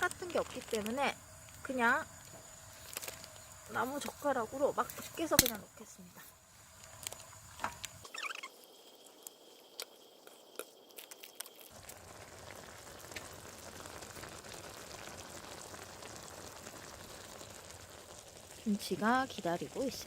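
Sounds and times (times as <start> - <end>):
broth boiling and sizzling in a pan: 0.0 - 20.0
short squeak: 8.0 - 8.5.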